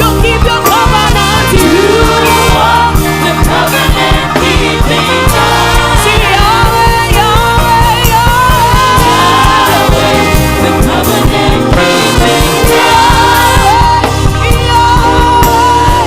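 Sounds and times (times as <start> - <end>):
band with steady beat: 0.0 - 16.0
voices singing: 0.0 - 16.0.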